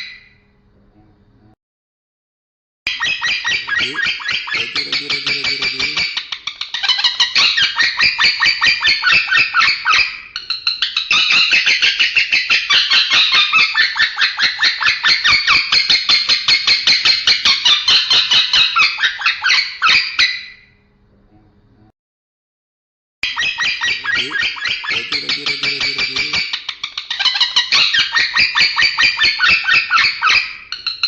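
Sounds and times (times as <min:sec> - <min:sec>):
lovebird chattering song: 0:02.9 - 0:20.2, 0:23.2 - 0:31.0.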